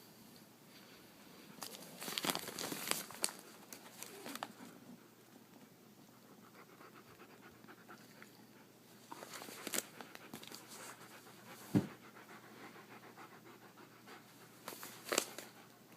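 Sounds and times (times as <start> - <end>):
dog panting softly: 6.0 - 8.8, 9.9 - 14.6
dull thump: 11.7 - 12.0.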